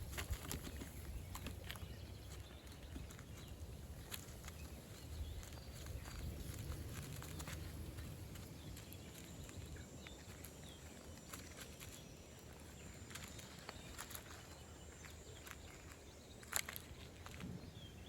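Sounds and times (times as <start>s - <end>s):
small clicks and rustles: 0.0s - 18.0s.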